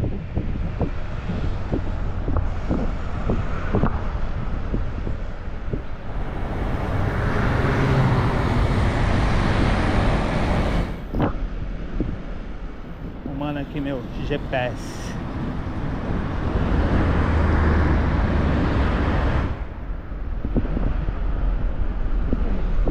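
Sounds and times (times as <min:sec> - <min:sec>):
wind rumble on microphone: 0:00.0 - 0:22.9
motor vehicle passing: 0:05.3 - 0:11.2, 0:12.6 - 0:20.4.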